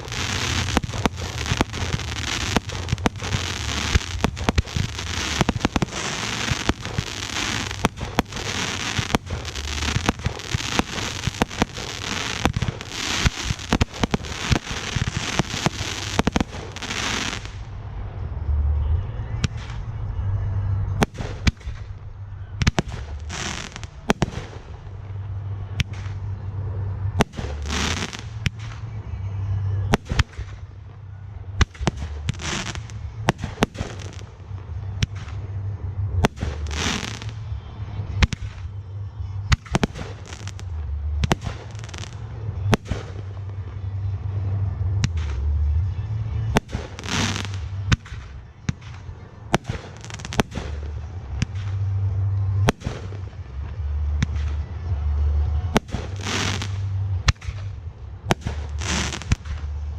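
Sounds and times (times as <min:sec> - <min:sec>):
rushing firework burst: 0:00.0 - 0:17.7
steady low hum: 0:00.0 - 0:59.9.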